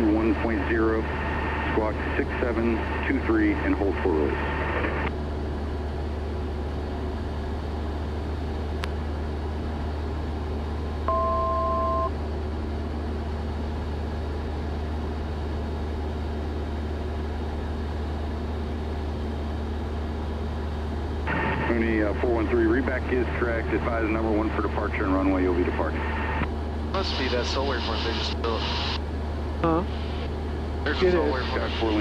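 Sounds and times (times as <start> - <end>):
aircraft engine droning: 0.0 - 32.0
two-tone beep: 11.1 - 12.1.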